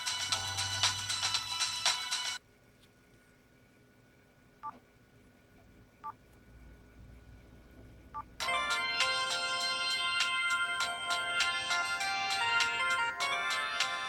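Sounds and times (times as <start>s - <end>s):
phone ringtone melody: 8.4s - 14.0s.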